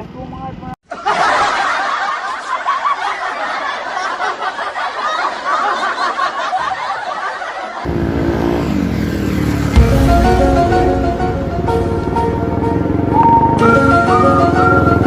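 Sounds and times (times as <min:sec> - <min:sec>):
background music with bass: 0:07.9 - 0:15.0.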